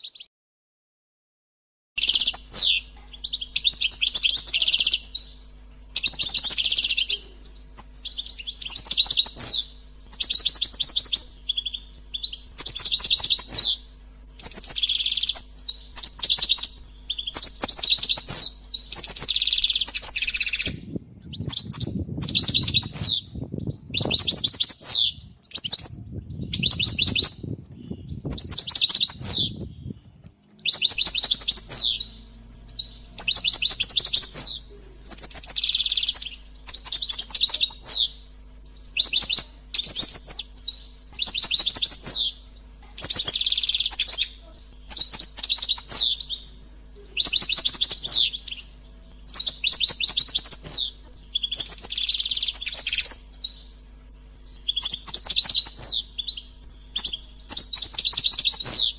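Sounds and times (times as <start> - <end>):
goldfinch twittering song: 2.0 - 58.9
low rumbling noise: 2.5 - 44.9.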